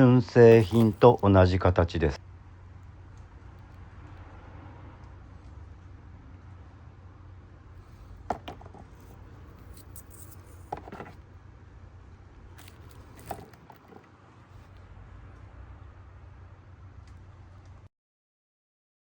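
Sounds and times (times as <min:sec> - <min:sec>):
steady low hum: 0:00.0 - 0:17.9
light clicks of parts handled: 0:12.6 - 0:14.8.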